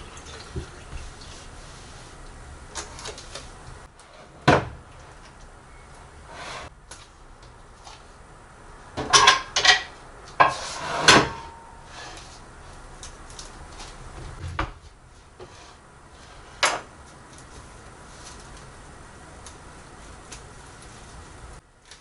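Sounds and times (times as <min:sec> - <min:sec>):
dishes clattering: 0:09.0 - 0:11.6
loud knock: 0:14.4 - 0:14.9.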